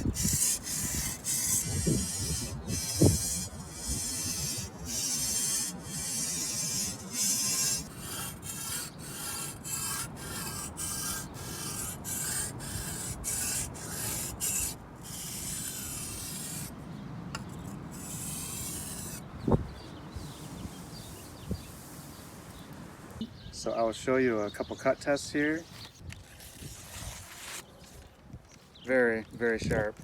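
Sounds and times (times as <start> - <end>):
blade scraping on whetstone: 0.0 - 16.8, 17.4 - 19.2, 25.7 - 28.0.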